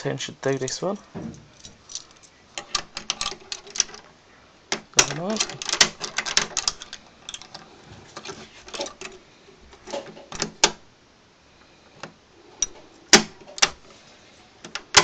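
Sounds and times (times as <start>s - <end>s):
keys clinking on ring: 0.6s - 2.4s.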